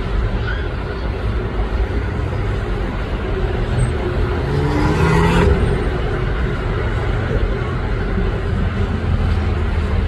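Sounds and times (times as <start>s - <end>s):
road traffic rumble: 0.0s - 10.0s.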